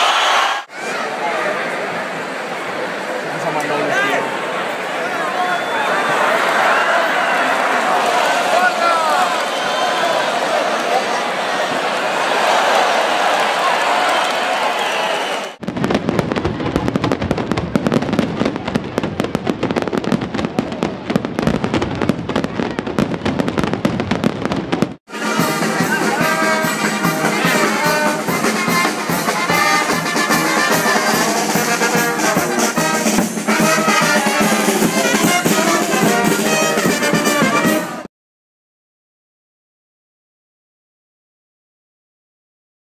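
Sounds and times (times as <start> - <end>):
fireworks crackling: 15.6 - 37.8
brass band playing: 25.1 - 38.1.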